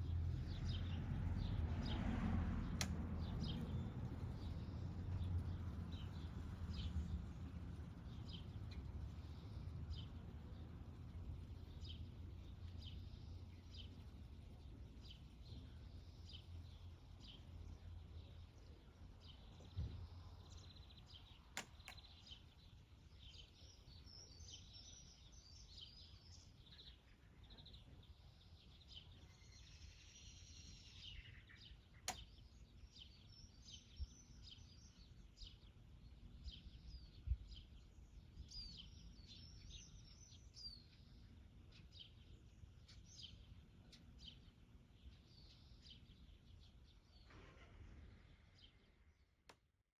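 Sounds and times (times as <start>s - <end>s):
small birds chirping: 0.0s - 49.6s
soft clicks: 2.8s - 3.0s, 21.5s - 22.1s, 32.0s - 32.3s.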